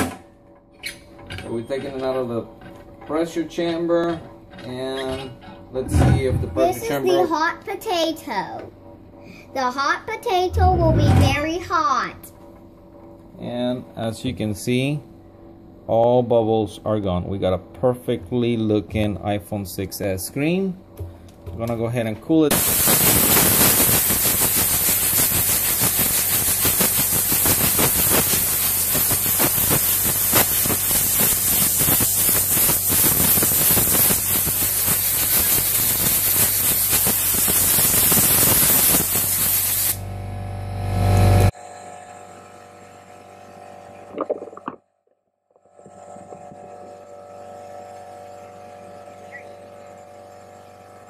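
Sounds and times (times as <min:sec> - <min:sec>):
air compressor humming: 0:00.0 - 0:44.8, 0:45.6 - 0:51.0
compressed air hissing: 0:22.5 - 0:40.0.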